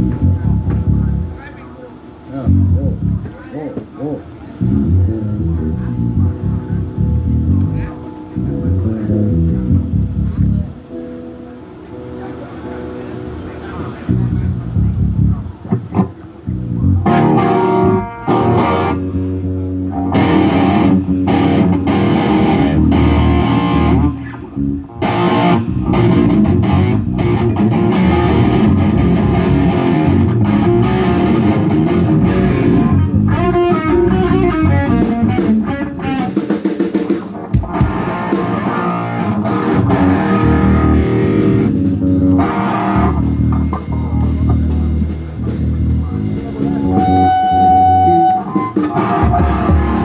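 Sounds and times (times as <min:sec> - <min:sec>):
bass guitar: 0:00.0 - 0:01.4, 0:02.3 - 0:03.4, 0:04.5 - 0:11.2, 0:13.6 - 0:50.0
electric guitar: 0:00.0 - 0:50.0
drum kit: 0:25.1 - 0:50.0.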